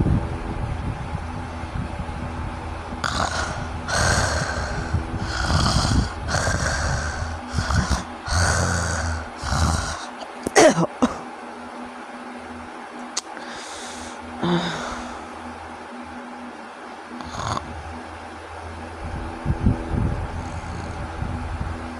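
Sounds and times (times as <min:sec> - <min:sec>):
loud sliding-pitch snort: 0:03.0 - 0:11.2
person snoring: 0:03.0 - 0:11.2, 0:13.4 - 0:15.3, 0:17.2 - 0:17.9.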